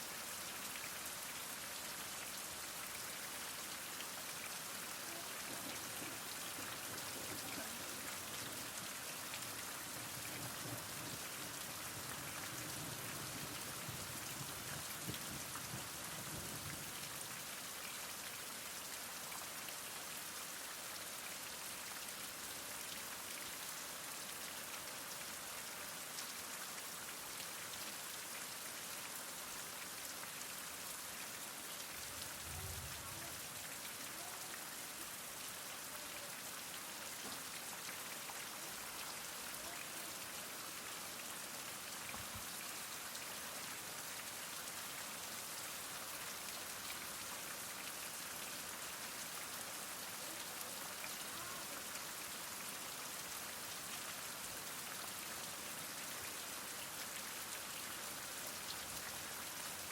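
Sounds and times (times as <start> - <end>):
heavy rain falling: 0.0 - 17.8, 29.0 - 54.1.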